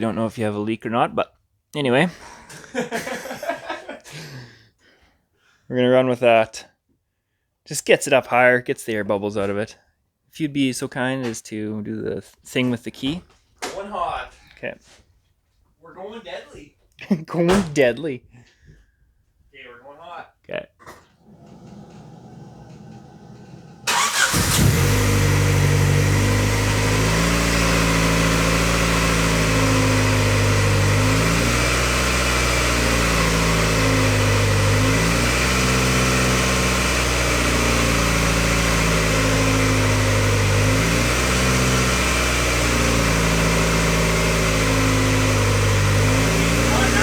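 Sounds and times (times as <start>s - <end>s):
engine cranking: 21.2s - 47.0s
engine idling with surging revs: 21.2s - 47.0s.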